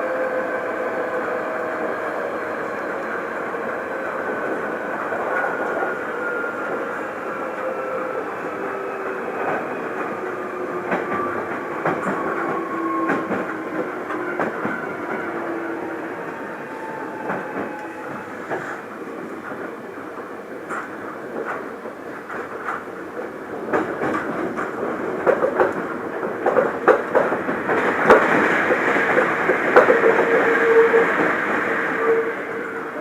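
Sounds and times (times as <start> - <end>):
train wheels on rails: 0.0 - 33.0.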